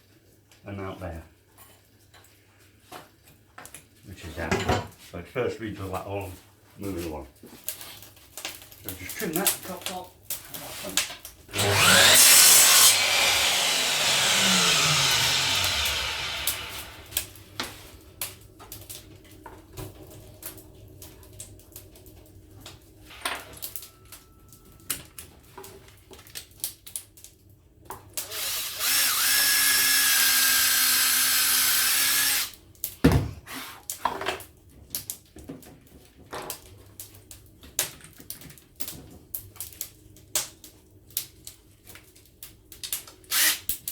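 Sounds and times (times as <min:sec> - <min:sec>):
power tool trimming wood: 0:11.5 - 0:17.5, 0:28.2 - 0:32.5, 0:43.3 - 0:43.7.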